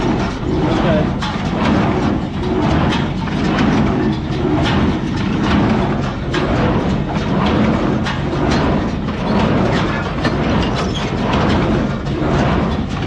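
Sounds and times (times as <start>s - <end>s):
baler mechanical clatter: 0.0s - 13.0s
tractor engine drone: 0.0s - 13.0s.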